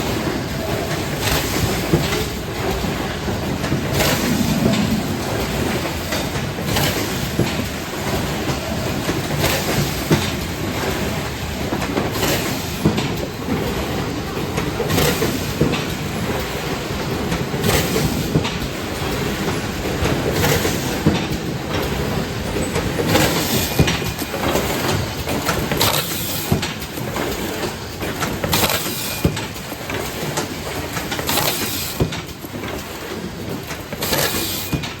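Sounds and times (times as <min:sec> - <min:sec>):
packaging machine clatter: 0:23.1 - 0:35.0.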